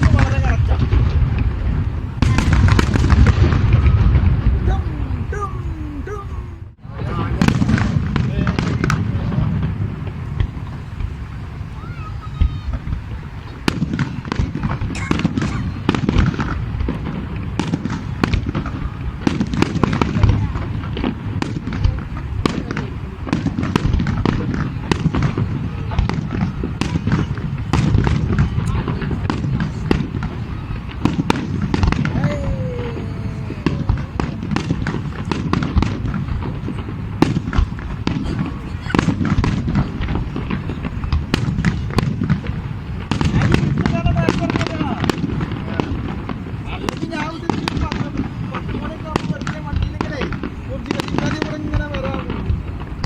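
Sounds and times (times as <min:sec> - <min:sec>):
low rumble: 0:00.0 - 0:08.2
fireworks bangs and crackles: 0:00.0 - 0:53.0.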